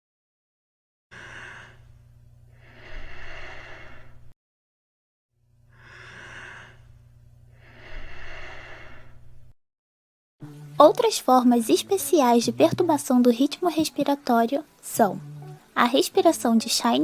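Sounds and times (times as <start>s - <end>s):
person breathing: 1.1s - 4.3s, 5.7s - 9.3s
steady low hum: 14.2s - 16.8s.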